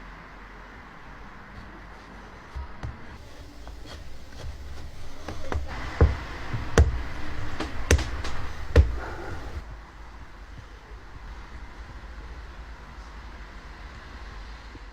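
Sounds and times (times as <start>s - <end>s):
sharp knocks: 2.5s - 9.6s.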